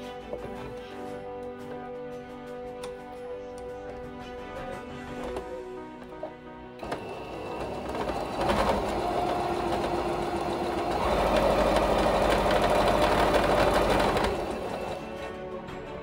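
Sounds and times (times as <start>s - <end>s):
sewing machine stitching: 6.8s - 15.2s.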